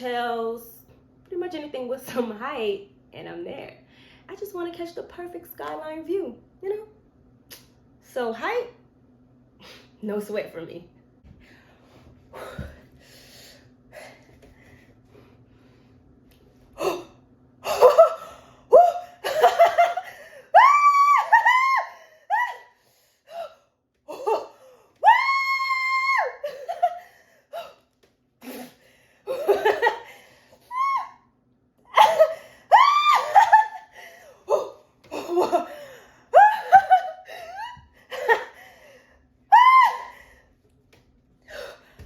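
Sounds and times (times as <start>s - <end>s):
woman laughing and shrieking: 17.7s - 22.7s, 24.1s - 27.0s, 30.7s - 31.2s, 31.9s - 38.6s, 39.5s - 40.2s
woman screaming: 20.5s - 22.6s, 25.0s - 26.5s, 30.7s - 31.2s, 32.0s - 33.8s, 39.5s - 40.2s.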